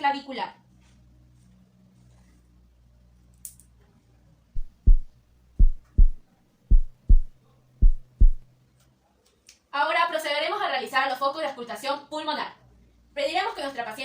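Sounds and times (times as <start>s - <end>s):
heartbeat through stethoscope: 4.6s - 8.4s.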